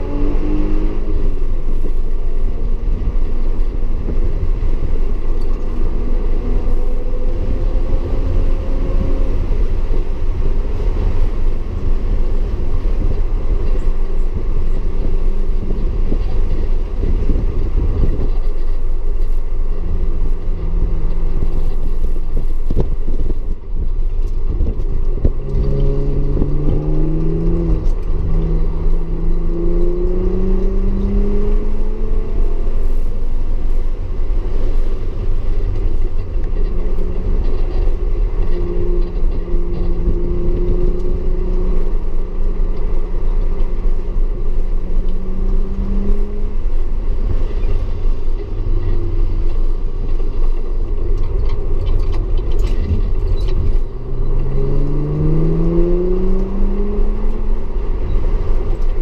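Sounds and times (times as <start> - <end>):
car engine accelerating: 0.0 - 59.0
low road rumble: 0.0 - 59.0.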